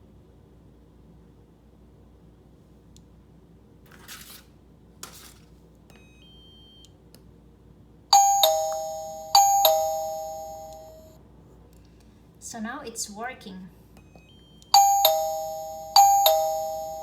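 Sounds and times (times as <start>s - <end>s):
doorbell ding-dong chime: 8.1s - 11.2s, 14.8s - 17.0s.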